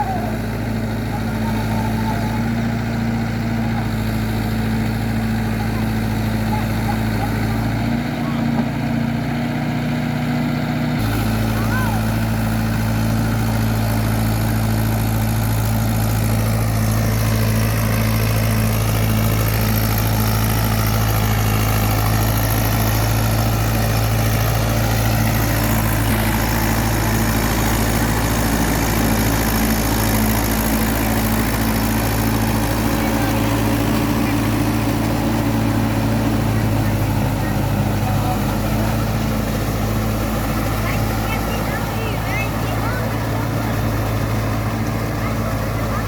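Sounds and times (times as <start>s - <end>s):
tractor engine running: 0.0s - 46.0s.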